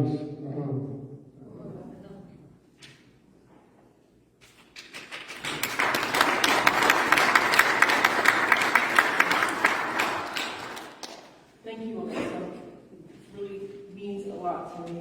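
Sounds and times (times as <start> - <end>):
audience applauding: 4.8 - 11.3.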